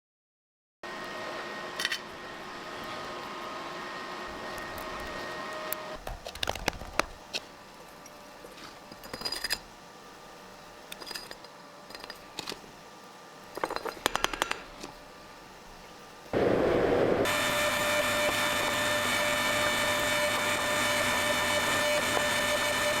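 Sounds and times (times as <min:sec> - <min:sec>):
small metal parts rattling: 0:08.9 - 0:09.6, 0:10.9 - 0:12.6, 0:13.6 - 0:14.6.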